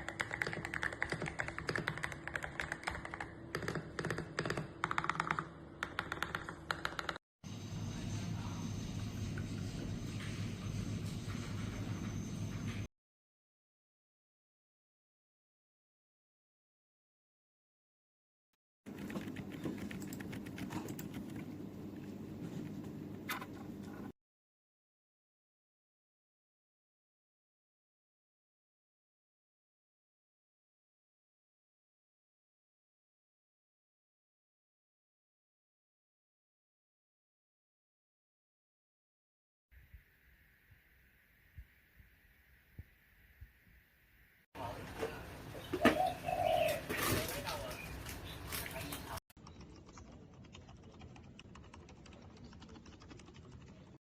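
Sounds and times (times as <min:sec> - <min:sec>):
typing on a mechanical keyboard: 0:00.0 - 0:07.2, 0:18.9 - 0:21.4, 0:49.4 - 0:54.0.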